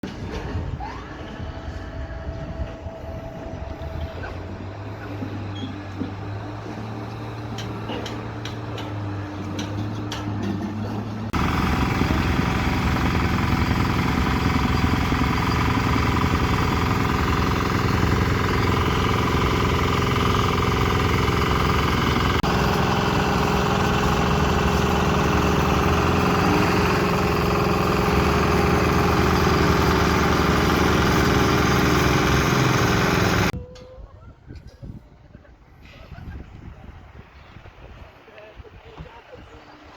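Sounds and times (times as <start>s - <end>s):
diesel engine running loudly: 0.2s - 33.6s
scattered clicks and knocks: 7.5s - 11.3s.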